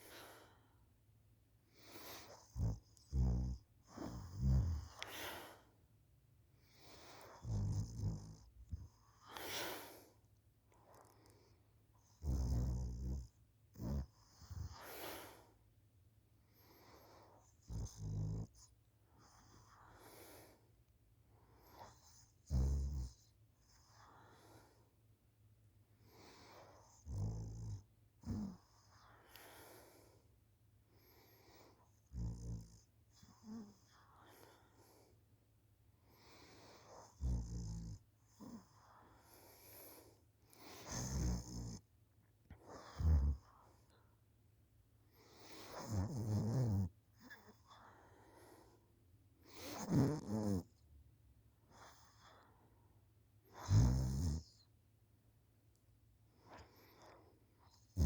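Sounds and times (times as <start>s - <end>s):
faint breath: 0.0s - 1.0s, 1.6s - 2.6s, 3.9s - 5.9s, 6.6s - 7.5s, 8.8s - 11.7s, 14.6s - 15.7s, 16.4s - 17.5s, 19.1s - 22.1s, 23.8s - 25.0s, 28.5s - 32.0s, 33.2s - 35.4s, 38.4s - 41.0s, 47.3s - 49.8s
soft breathy breaths: 0.0s - 46.2s, 46.9s - 50.0s, 51.5s - 53.8s, 56.2s - 58.0s.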